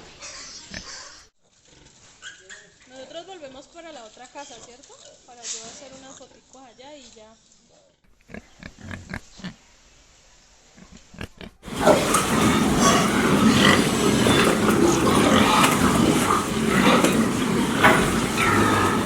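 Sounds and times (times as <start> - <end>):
pigs grunting: 0.1 - 2.8, 7.8 - 9.6, 10.8 - 19.0.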